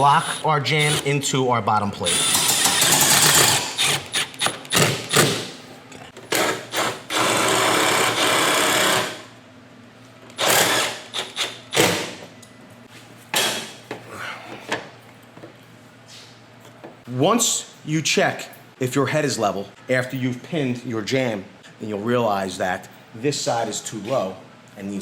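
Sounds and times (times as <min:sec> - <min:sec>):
power drill driving a screw: 0:02.1 - 0:05.3, 0:06.4 - 0:09.2, 0:10.4 - 0:12.0.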